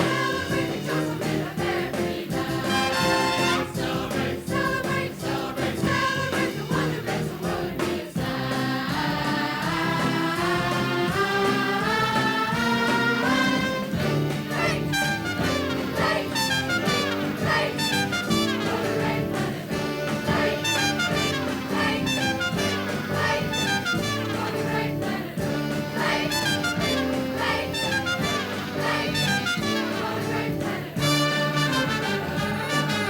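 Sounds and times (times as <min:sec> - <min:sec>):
trumpets and trombones playing: 0:00.0 - 0:06.9, 0:09.4 - 0:33.0
rhythmic accompaniment: 0:00.0 - 0:33.0.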